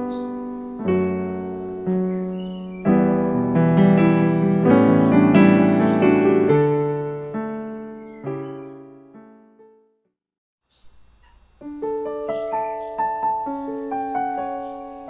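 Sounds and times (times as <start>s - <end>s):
slow piano chords: 0.0s - 10.1s, 11.3s - 15.0s.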